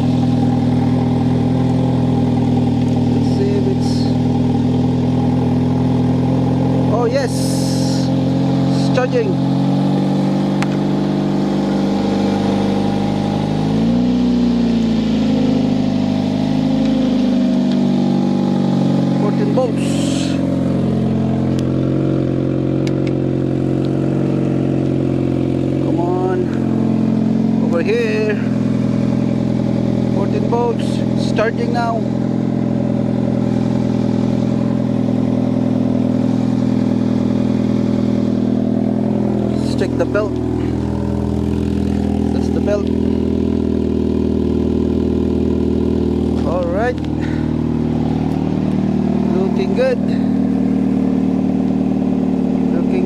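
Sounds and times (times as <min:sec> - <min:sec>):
car engine idling: 0:00.0 - 0:53.0.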